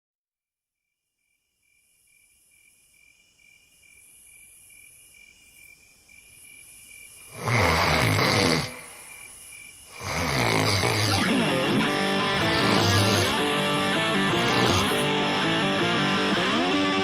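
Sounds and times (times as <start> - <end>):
crickets chirping: 0.8 - 17.0
loud snore: 7.2 - 9.1, 9.9 - 15.2.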